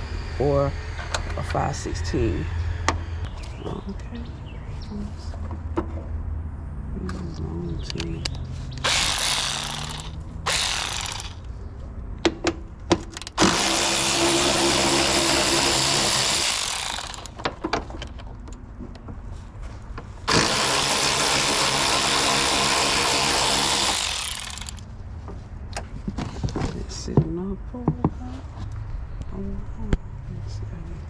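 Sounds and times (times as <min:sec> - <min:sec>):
power drill driving screws: 0:08.8 - 0:11.5, 0:13.2 - 0:17.6, 0:20.3 - 0:24.8
tool clicks and knocks: 0:16.4 - 0:19.2.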